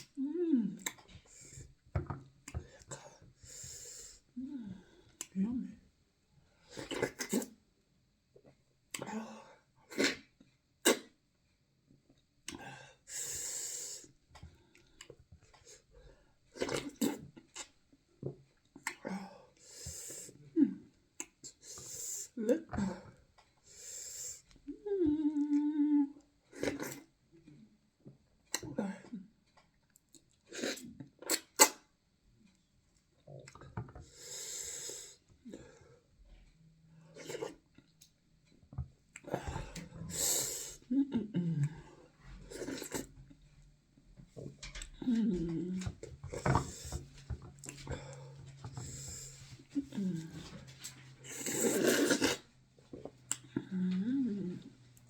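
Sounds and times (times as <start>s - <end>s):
mouth smacking while eating: 21.2s - 22.3s, 30.0s - 31.9s, 37.2s - 38.1s, 41.6s - 43.3s, 47.6s - 54.8s
slurping: 42.4s - 43.2s, 46.3s - 53.7s
sharp mouth clicks: 53.3s - 53.6s.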